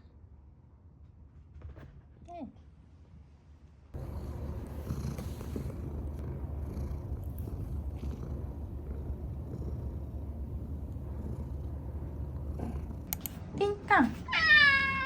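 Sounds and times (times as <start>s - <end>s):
cat purring: 4.0s - 14.2s.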